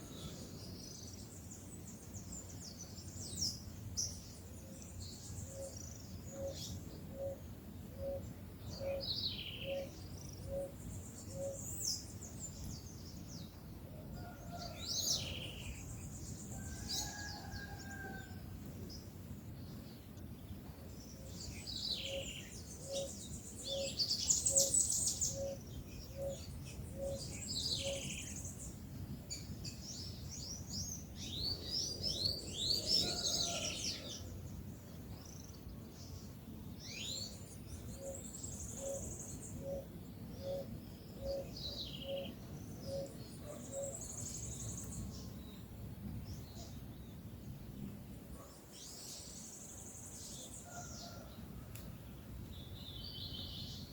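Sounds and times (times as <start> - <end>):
birds chirping and singing: 21.0 - 34.3, 35.1 - 45.6.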